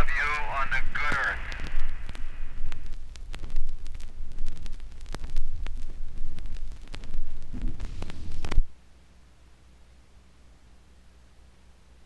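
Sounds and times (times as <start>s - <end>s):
record clicks and crackle: 0.0s - 8.8s
faint hum: 0.0s - 12.0s
record playback rumble: 0.0s - 12.0s.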